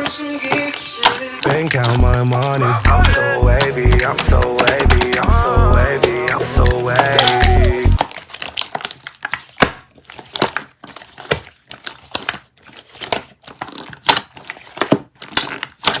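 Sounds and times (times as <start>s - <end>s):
background music: 0.0s - 8.0s.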